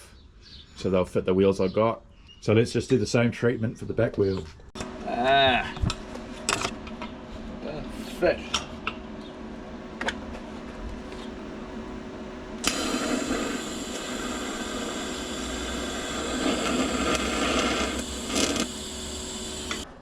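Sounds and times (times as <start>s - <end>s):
low hum: 4.8s - 20.0s
power tool whirring: 11.0s - 20.0s.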